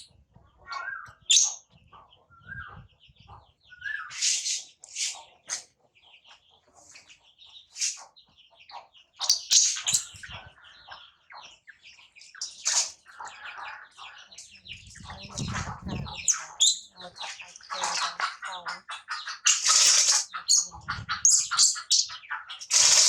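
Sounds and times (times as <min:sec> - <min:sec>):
baby monkey squeaking and chirping: 0:09.2 - 0:10.4, 0:15.0 - 0:16.9.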